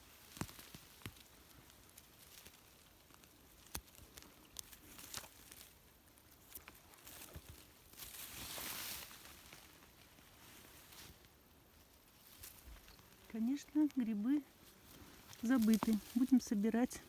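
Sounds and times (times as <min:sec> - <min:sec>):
rustling of bushes and vegetation: 0:00.0 - 0:17.0
small twig snaps and clicks: 0:00.2 - 0:08.1, 0:15.2 - 0:16.3.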